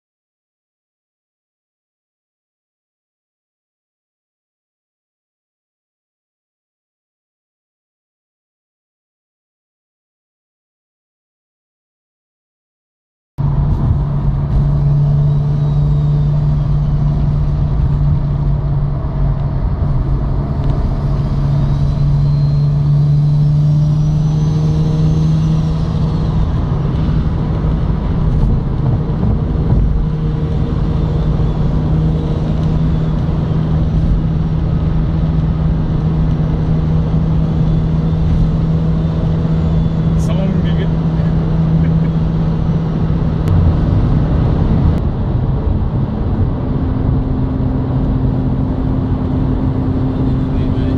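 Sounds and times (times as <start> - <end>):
road rumble: 13.4 - 50.9.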